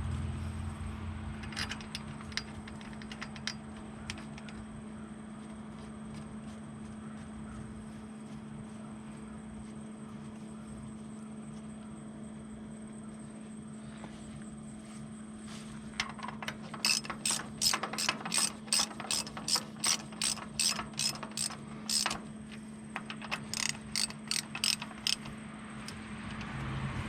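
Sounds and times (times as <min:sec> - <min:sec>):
socket ratchet wrench clicking: 0:01.4 - 0:04.5, 0:16.0 - 0:22.3, 0:23.0 - 0:26.6.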